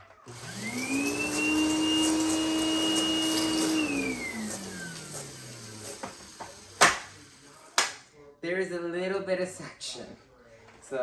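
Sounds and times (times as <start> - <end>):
vacuum motor whining: 0.3 - 7.7.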